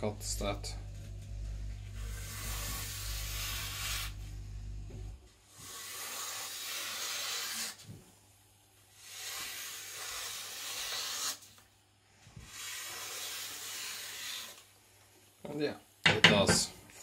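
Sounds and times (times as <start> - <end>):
knife slicing through paper: 2.0 - 4.2, 5.6 - 7.8, 9.0 - 11.6.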